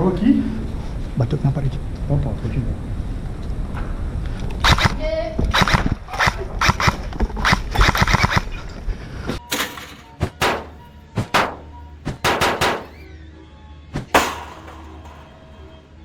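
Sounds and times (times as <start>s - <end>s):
sharp gunshot-like bangs: 9.5s - 13.0s.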